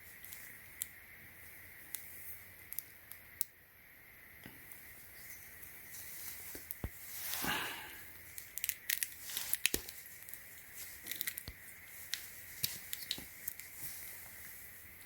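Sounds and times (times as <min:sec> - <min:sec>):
packaging crinkling: 0:06.4 - 0:14.4.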